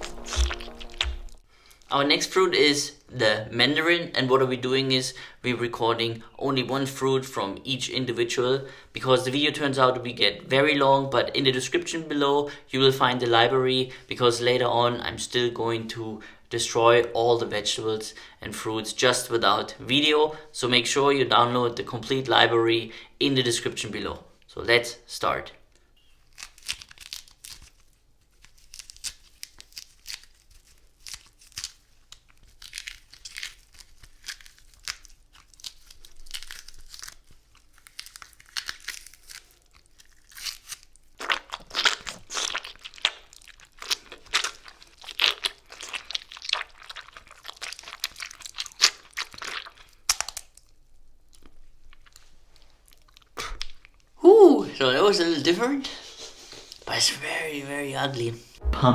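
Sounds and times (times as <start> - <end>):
mandarin being torn and crushed: 0.0 - 1.4, 26.2 - 54.1.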